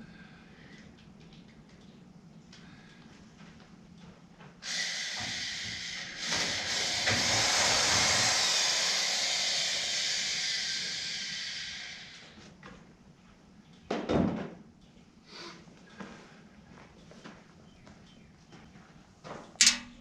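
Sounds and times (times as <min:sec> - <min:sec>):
steady hiss: 0:04.6 - 0:12.4.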